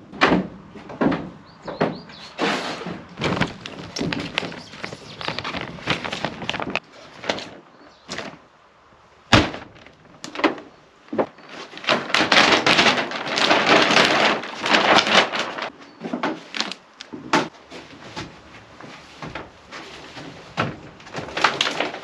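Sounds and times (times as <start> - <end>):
wood knocks and thuds: 0.0 - 8.4, 9.3 - 16.5, 17.1 - 22.0
wood scraping and rustling: 0.0 - 8.5, 9.3 - 22.0.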